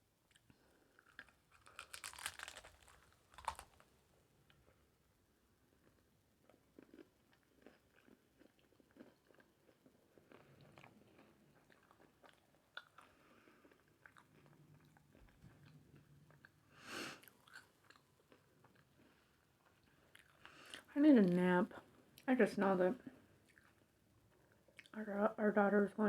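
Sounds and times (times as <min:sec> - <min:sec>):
chewing and mouth sounds: 0:00.3 - 0:03.9, 0:05.9 - 0:16.6, 0:17.2 - 0:20.9, 0:23.4 - 0:25.0.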